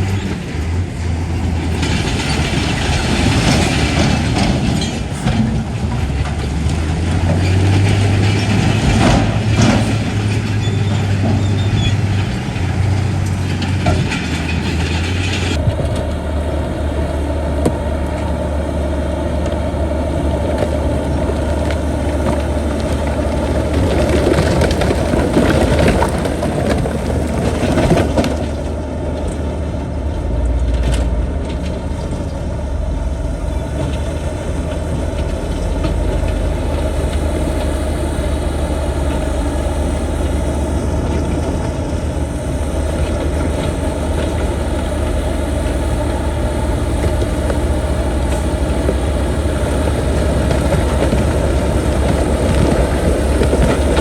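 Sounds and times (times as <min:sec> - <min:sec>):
heavy diesel machinery running: 0:00.0 - 0:54.0.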